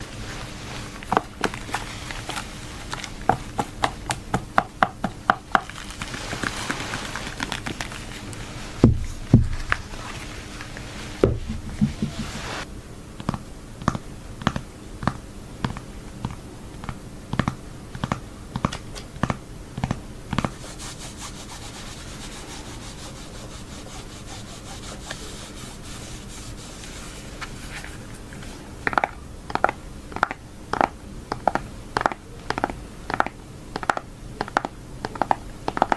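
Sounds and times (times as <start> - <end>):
soft rubbing: 8.0 - 12.7, 20.3 - 28.8
heavy thumps: 8.8 - 9.9, 11.2 - 12.6
high heels clicking on hard floor: 11.2 - 12.6.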